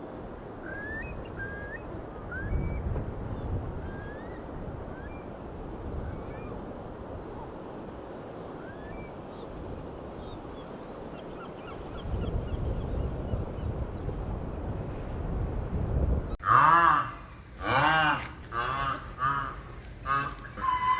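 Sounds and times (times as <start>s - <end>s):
wind buffeting microphone: 0.0s - 16.4s
bird calls and chirps: 10.2s - 14.0s.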